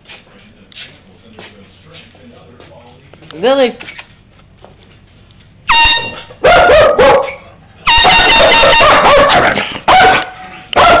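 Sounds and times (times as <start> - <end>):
air horn blasts: 5.7 - 6.4, 7.8 - 9.6
dog barking: 6.1 - 11.0.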